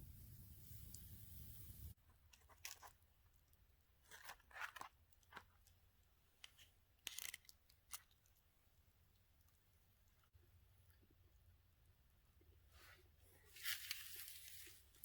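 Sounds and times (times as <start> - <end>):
crackles and crunches: 6.4 - 8.4, 13.5 - 15.0.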